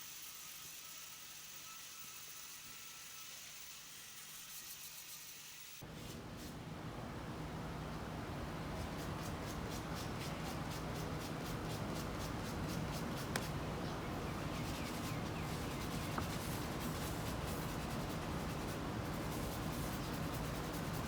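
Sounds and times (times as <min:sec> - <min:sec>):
low steady hum: 0:05.9 - 0:21.0
hand rubbing on wood: 0:08.8 - 0:13.7, 0:14.4 - 0:21.0.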